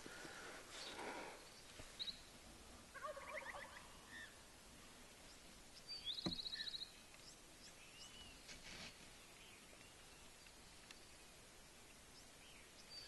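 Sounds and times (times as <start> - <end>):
turkey gobbling: 2.9 - 3.8.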